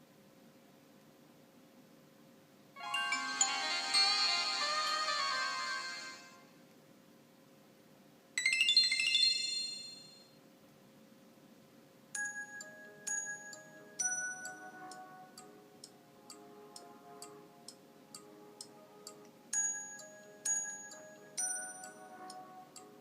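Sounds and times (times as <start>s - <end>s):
phone three-note chime: 2.8s - 6.4s
steady ticking clicks: 12.2s - 22.9s.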